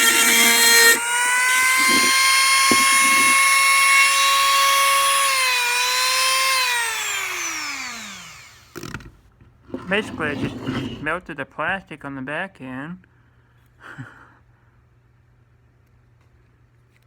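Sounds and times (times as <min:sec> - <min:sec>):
rotary tool drilling acrylic: 0:00.0 - 0:09.0.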